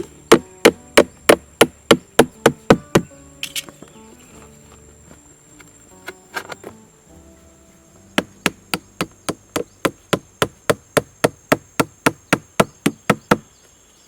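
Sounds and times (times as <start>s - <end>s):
rapid sharp knocking: 0.3s - 3.1s, 8.2s - 13.4s.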